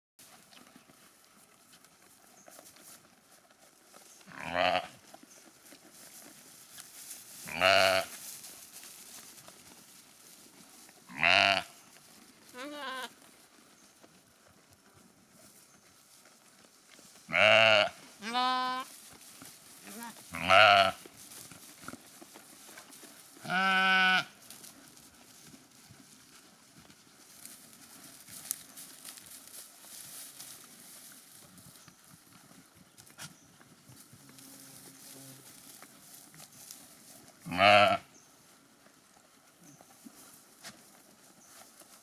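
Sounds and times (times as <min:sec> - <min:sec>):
sheep bleating: 0:04.3 - 0:05.0, 0:07.5 - 0:08.1, 0:11.1 - 0:11.8, 0:12.5 - 0:13.1, 0:17.3 - 0:18.9, 0:19.8 - 0:21.0, 0:23.4 - 0:24.4, 0:37.5 - 0:38.1
faint rustling: 0:05.0 - 0:17.4.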